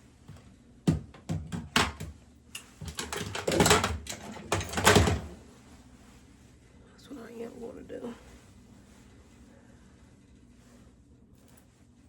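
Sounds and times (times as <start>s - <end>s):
objects clicking and knocking: 1.4s - 5.3s
clattering and rustling: 2.6s - 5.4s.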